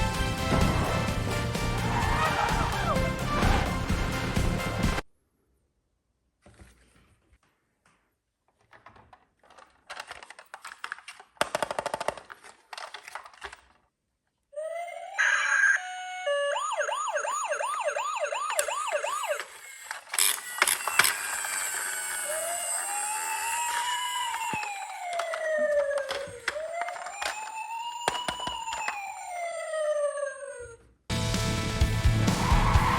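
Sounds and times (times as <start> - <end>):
siren wail: 0.6 - 4.5, 14.6 - 20.0, 20.6 - 30.8, 32.3 - 32.9
siren yelp: 14.6 - 19.9, 20.8 - 30.8.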